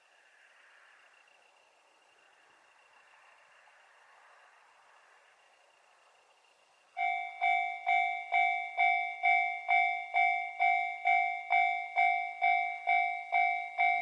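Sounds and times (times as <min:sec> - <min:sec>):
level crossing alarm bell: 0:07.0 - 0:14.0.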